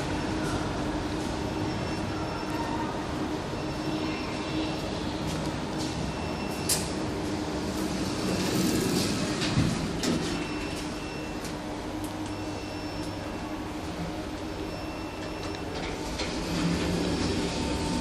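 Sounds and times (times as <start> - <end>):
elevator hum with high whine: 0.0 - 18.0
elevator sliding rush: 6.9 - 10.8, 15.7 - 18.0.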